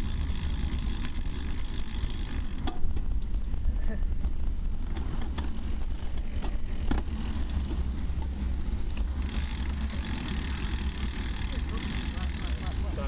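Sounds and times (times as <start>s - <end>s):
wind rumbling on microphone: 0.0s - 13.0s
small clicks and rattles: 8.9s - 13.0s.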